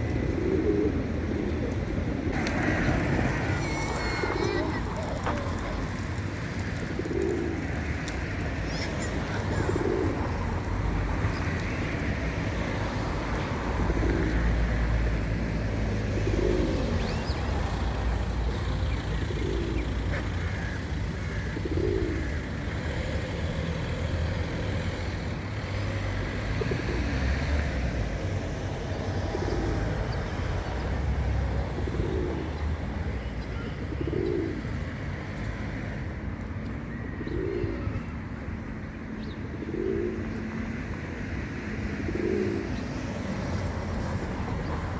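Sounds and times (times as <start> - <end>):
pigeons cooing: 0.1 - 11.5, 13.3 - 14.8, 16.0 - 25.2, 26.4 - 27.5, 28.9 - 30.7, 31.6 - 32.9, 33.6 - 34.9, 37.2 - 37.9, 39.4 - 40.4, 41.9 - 43.1.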